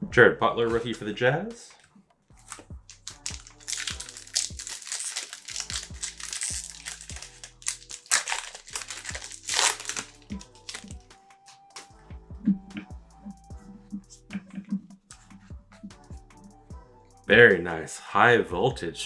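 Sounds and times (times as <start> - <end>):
background music: 0.0 - 19.0
wrapper tearing and crinkling: 2.4 - 11.9.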